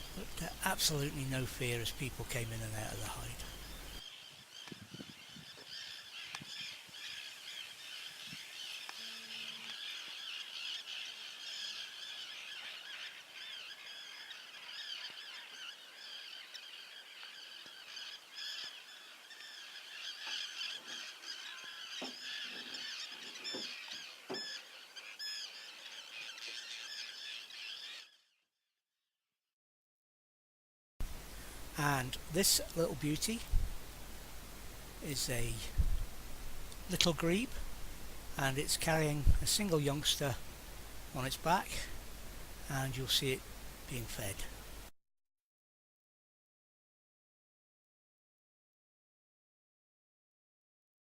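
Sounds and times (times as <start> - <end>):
waterbirds calling: 0.0 - 28.4, 36.3 - 42.1.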